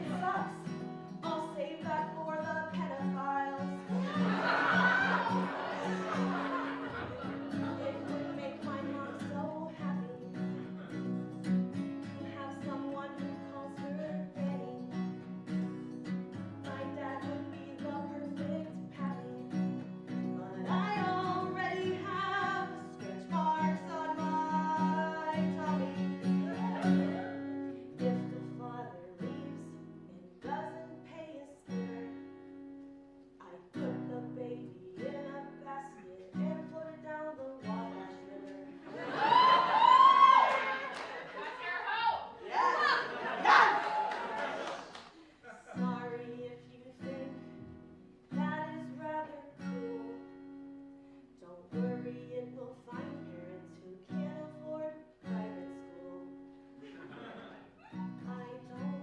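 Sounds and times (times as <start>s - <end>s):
person singing: 0.0s - 15.2s, 16.6s - 32.2s, 33.4s - 40.9s, 45.7s - 47.7s, 51.4s - 56.4s
acoustic guitar playing chords: 0.0s - 44.1s, 45.6s - 59.0s.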